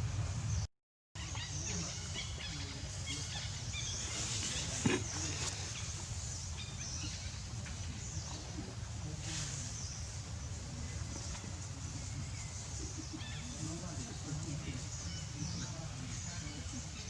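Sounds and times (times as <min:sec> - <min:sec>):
monkeys squeaking and chirping: 0:01.2 - 0:07.9.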